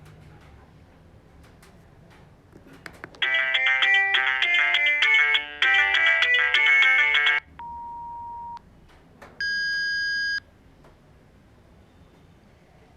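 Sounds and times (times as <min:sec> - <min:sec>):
polyphonic ringtone melody: 0:03.2 - 0:07.5
electronic phone beeps: 0:03.2 - 0:08.6, 0:09.4 - 0:10.4.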